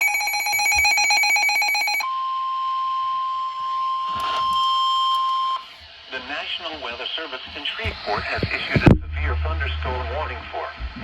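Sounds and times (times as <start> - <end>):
steady alarm tone: 0.0 - 5.7.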